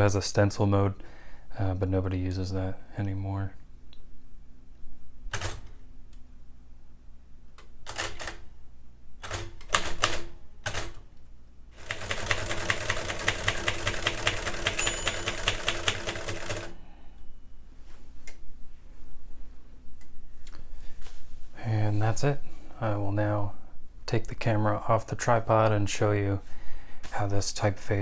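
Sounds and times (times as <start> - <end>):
manual typewriter clacking: 5.3 - 5.7, 7.9 - 8.4, 9.2 - 11.0, 11.8 - 16.8.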